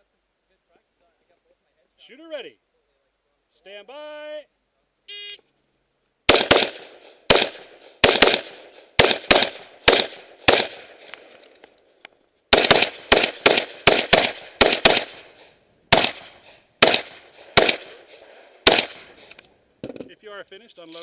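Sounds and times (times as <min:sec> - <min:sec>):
rifle shots echoing: 0:06.3 - 0:11.4, 0:12.5 - 0:19.3.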